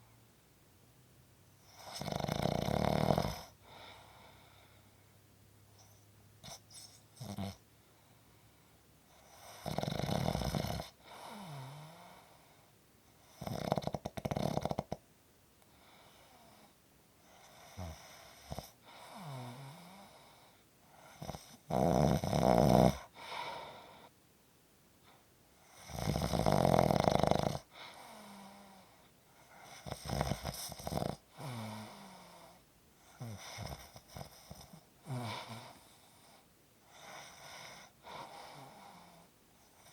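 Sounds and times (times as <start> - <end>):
quiet breaths: 0.0 - 39.9
person snoring: 1.7 - 4.0, 7.2 - 7.6, 9.2 - 12.4, 13.4 - 15.0, 21.2 - 23.4, 25.7 - 28.9, 29.8 - 32.6, 33.2 - 36.0.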